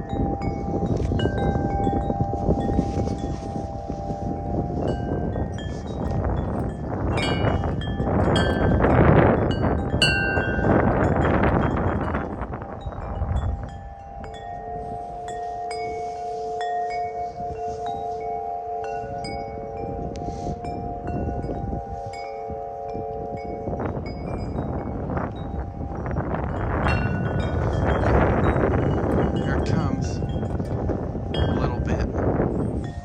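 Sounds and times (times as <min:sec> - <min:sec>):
wind buffeting microphone: 0:00.0 - 0:33.0
wind chimes ringing: 0:00.0 - 0:33.0.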